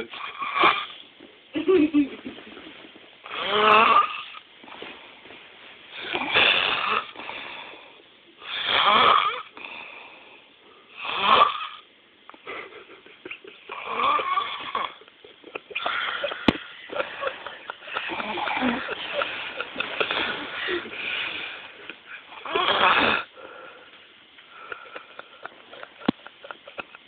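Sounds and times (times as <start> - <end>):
man snoring: 3.3 - 4.4, 6.0 - 7.6, 8.4 - 10.0, 11.0 - 11.8, 13.7 - 15.0, 18.1 - 19.0, 22.3 - 23.4
quiet breathing: 7.1 - 8.4, 9.5 - 11.0, 15.8 - 22.4, 23.2 - 26.0.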